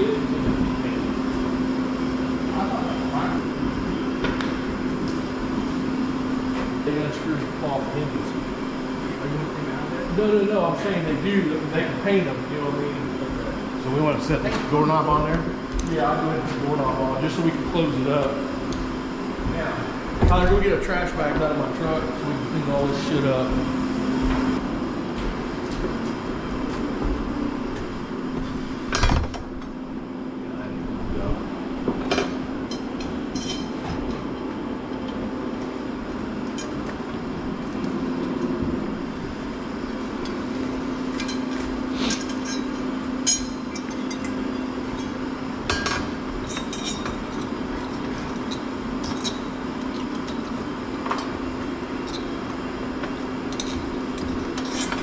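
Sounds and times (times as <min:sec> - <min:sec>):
steady low hum: 0:00.0 - 0:55.0
metal tools clinking and knocking: 0:32.1 - 0:34.2, 0:41.2 - 0:51.2.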